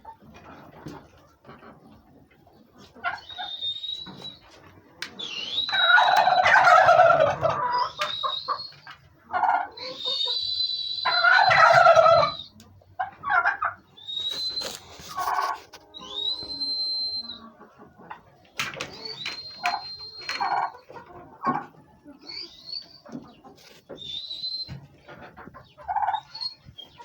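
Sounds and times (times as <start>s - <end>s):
turkeys gobbling: 0.0s - 27.0s
thin high whistling tone: 14.0s - 17.4s.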